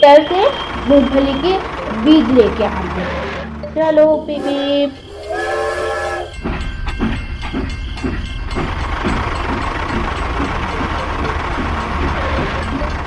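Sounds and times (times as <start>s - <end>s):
tractor engine running: 0.0s - 13.0s
tractor horn: 4.2s - 6.3s.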